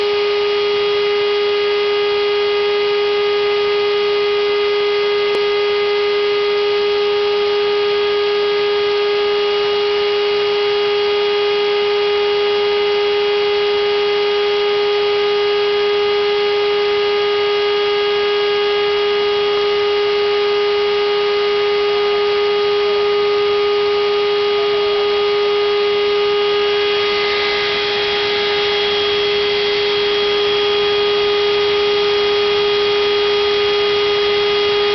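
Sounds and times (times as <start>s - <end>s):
router spindle motor whine: 0.0s - 34.9s.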